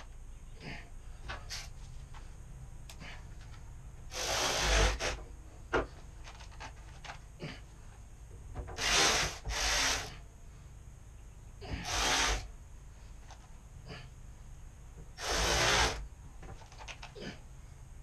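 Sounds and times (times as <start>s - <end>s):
short rasping scrapes: 4.1s - 5.2s, 15.2s - 16.0s.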